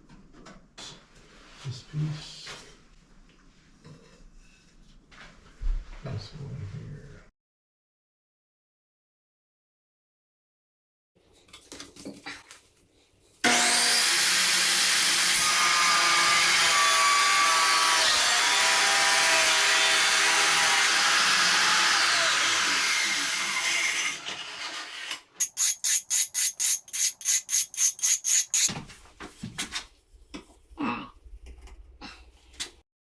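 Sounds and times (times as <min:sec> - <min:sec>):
power saw cutting tile: 0:13.4 - 0:28.8
rubbing strokes on tile edge: 0:25.4 - 0:28.8.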